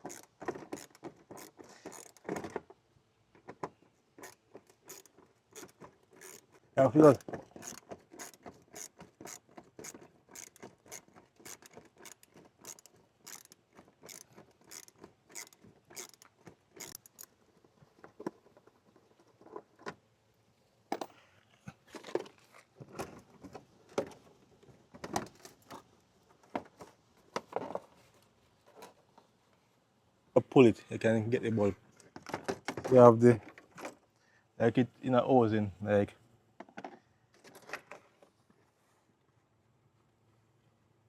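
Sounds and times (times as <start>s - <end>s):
even clicking of tools: 0.0s - 2.6s, 3.4s - 17.4s.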